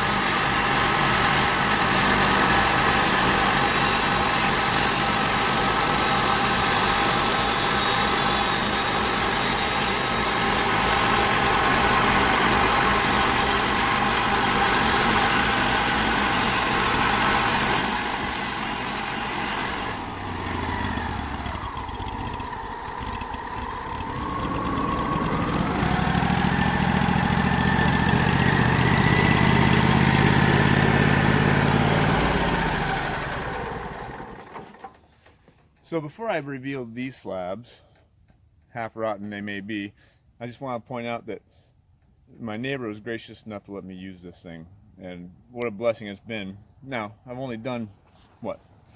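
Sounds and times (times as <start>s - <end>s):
saw blade cutting log hiss: 0.0s - 20.1s
sawmill engine running: 0.0s - 35.3s.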